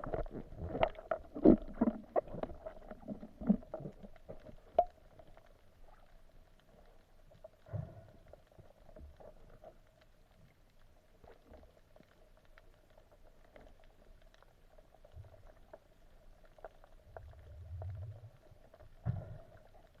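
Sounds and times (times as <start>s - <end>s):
muffled underwater clicks and knocks: 0.0s - 6.1s, 16.5s - 20.0s.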